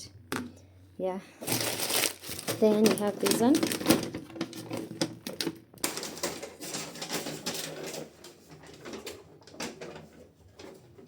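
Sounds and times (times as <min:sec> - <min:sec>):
paper crinkling: 0:01.4 - 0:08.0.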